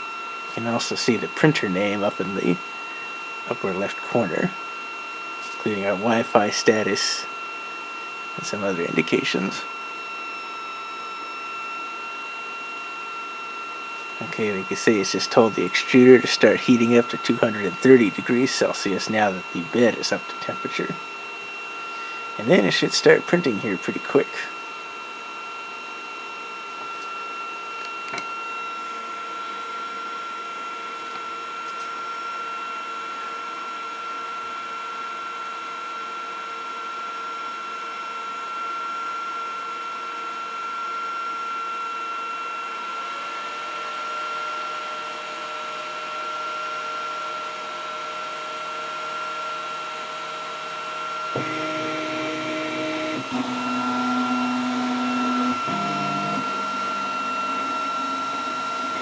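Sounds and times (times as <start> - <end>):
printer fans whining: 0.0 - 27.1, 42.8 - 59.0
stepper motors buzzing: 51.2 - 59.0.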